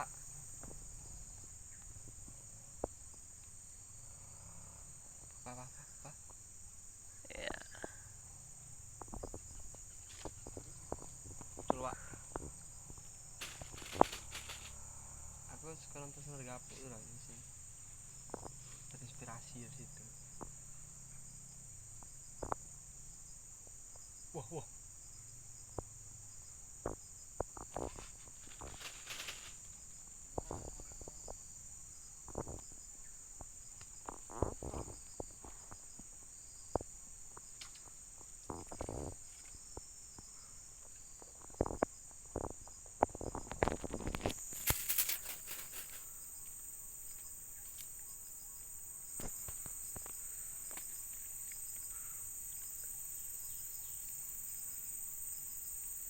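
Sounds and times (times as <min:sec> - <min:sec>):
high-pitched insect chorus: 0:00.0 - 0:56.0
rustling: 0:09.0 - 0:19.1, 0:27.6 - 0:31.4, 0:40.9 - 0:55.0.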